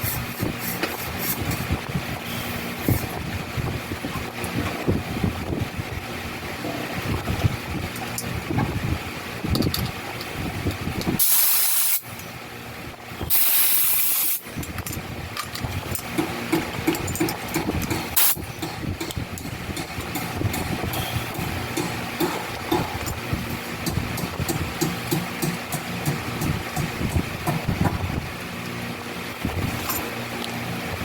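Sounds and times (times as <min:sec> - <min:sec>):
compressed air hissing into tyre: 0:11.2 - 0:12.1, 0:13.3 - 0:14.4.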